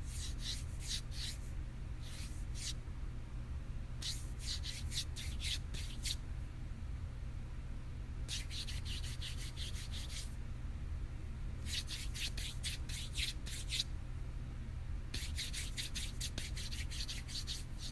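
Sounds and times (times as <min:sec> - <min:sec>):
dry skin rubbed briskly: 0:00.0 - 0:02.8, 0:04.0 - 0:06.2, 0:08.3 - 0:10.4, 0:11.6 - 0:13.9, 0:15.2 - 0:17.9.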